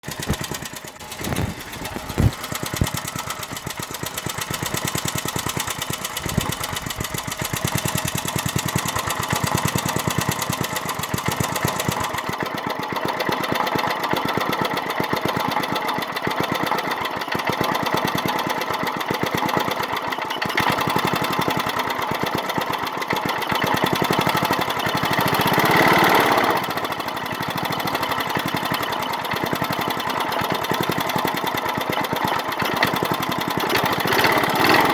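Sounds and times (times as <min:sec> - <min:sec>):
loud engine pops: 0:00.0 - 0:10.0
small engine running: 0:00.0 - 0:34.9.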